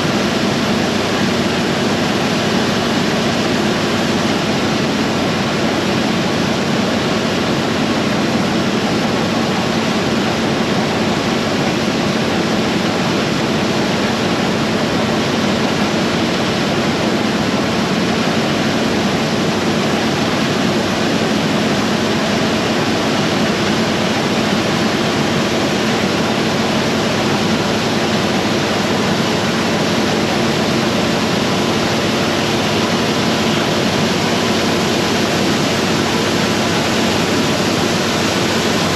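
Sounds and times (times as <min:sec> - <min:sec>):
harvest machinery running: 0:00.0 - 0:38.9.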